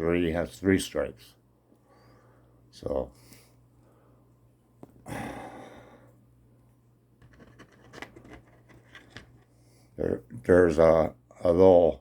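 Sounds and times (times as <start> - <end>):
person breathing out: 5.0 - 6.2.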